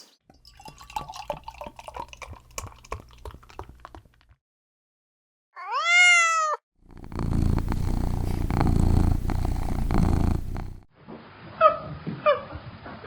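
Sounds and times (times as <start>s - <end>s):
cat purring: 6.8s - 10.9s.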